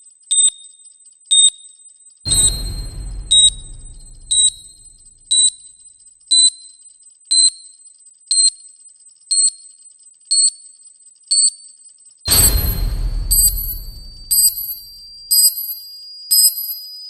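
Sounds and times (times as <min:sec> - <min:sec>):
low rumble: 0:02.3 - 0:05.4, 0:12.3 - 0:15.2.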